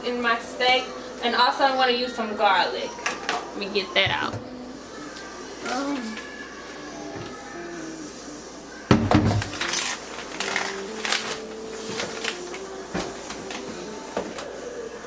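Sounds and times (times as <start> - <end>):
kitchen items knocking and clattering: 8.9 - 9.7.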